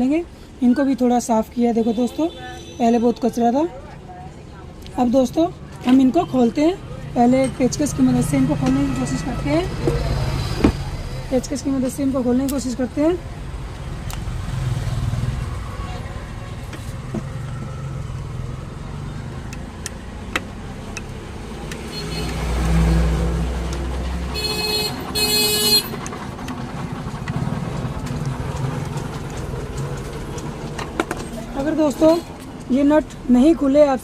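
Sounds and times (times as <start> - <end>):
street traffic rumbling: 0.0 - 34.0
vehicle horn: 1.8 - 3.1, 21.9 - 22.4, 24.3 - 26.0
vehicle passing: 6.5 - 34.0.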